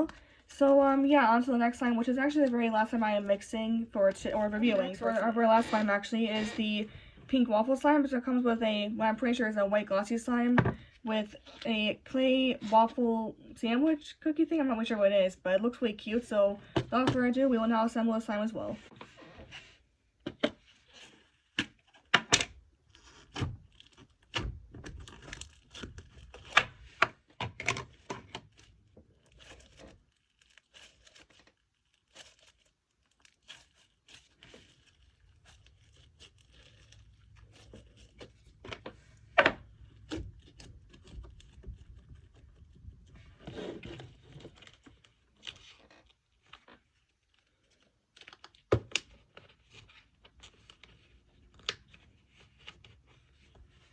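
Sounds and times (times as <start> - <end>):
packaging crinkling and tearing: 22.8 - 27.0, 27.8 - 53.5.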